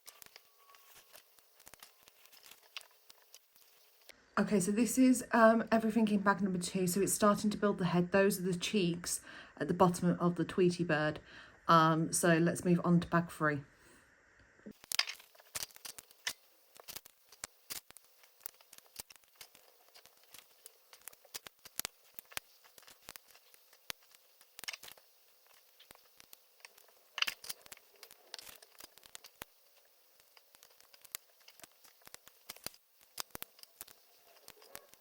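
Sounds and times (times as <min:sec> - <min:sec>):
plastic crinkling: 0:00.0 - 0:04.1, 0:14.7 - 0:35.0
plastic pieces clicking: 0:14.7 - 0:35.0.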